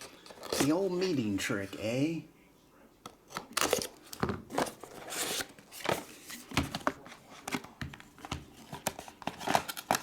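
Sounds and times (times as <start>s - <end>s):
packaging tearing and crinkling: 8.8s - 10.0s.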